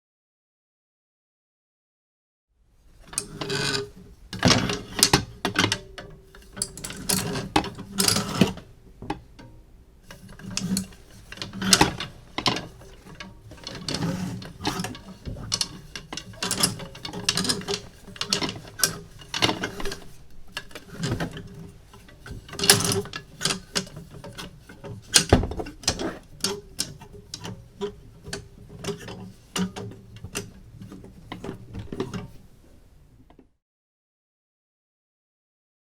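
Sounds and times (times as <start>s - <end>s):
clothes hangers scraping on rail: 3.1s - 8.7s, 10.1s - 32.4s.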